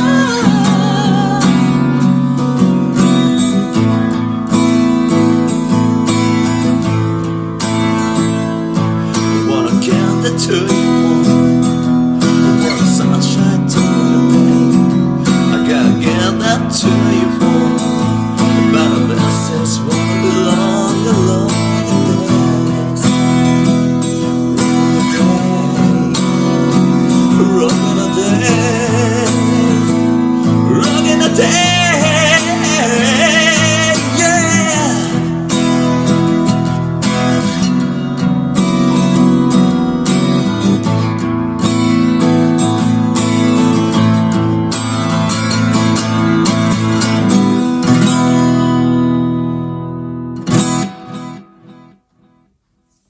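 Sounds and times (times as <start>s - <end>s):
man singing wavering notes: 0.0s - 2.1s, 24.7s - 36.0s
acoustic guitar strumming: 0.0s - 53.0s.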